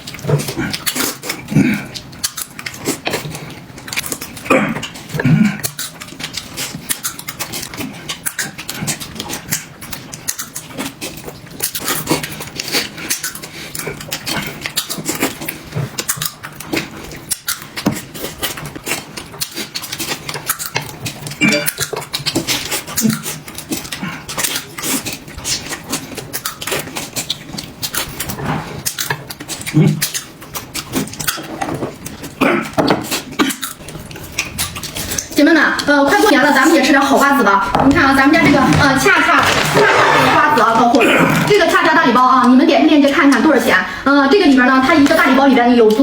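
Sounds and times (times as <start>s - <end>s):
wet chewing and slurping: 0.0s - 40.4s
throaty vocal sounds: 21.4s - 21.8s, 37.7s - 41.7s.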